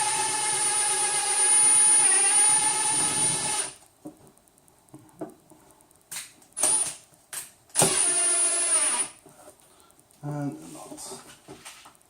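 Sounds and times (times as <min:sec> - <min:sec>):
electric drill whining: 0:00.0 - 0:03.8, 0:06.6 - 0:07.0, 0:07.7 - 0:09.2.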